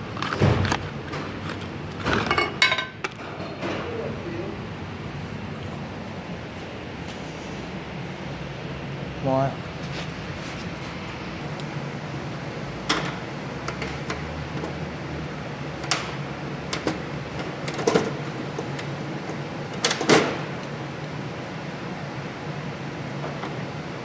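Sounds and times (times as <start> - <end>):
steady low hum: 0.0 - 24.0
tools knocking and clanking: 0.3 - 4.0.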